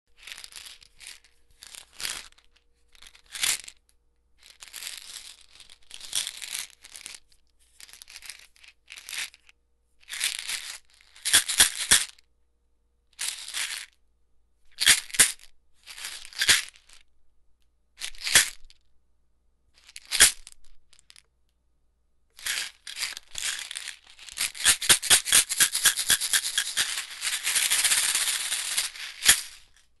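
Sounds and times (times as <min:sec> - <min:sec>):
pills rattling in a pill bottle: 0:00.1 - 0:12.2, 0:13.2 - 0:14.0, 0:14.8 - 0:17.0, 0:18.0 - 0:18.9, 0:19.8 - 0:21.3, 0:22.4 - 0:30.0.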